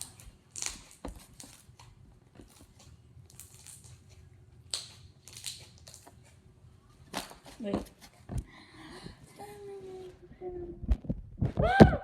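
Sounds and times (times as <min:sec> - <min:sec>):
slime squishing by hand: 0:00.0 - 0:08.5.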